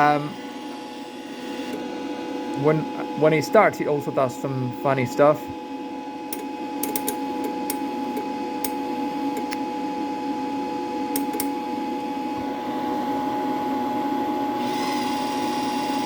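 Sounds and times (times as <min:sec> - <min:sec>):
wire feed motor humming: 0:00.0 - 0:16.0.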